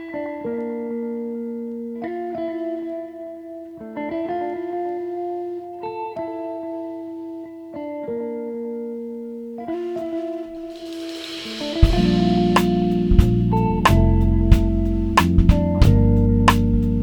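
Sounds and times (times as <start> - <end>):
guitar playing held chords: 0.0 - 17.0.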